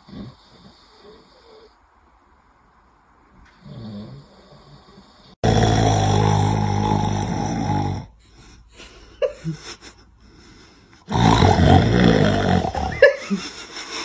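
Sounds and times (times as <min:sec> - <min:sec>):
man snoring loudly: 0:05.4 - 0:08.2, 0:11.1 - 0:13.3.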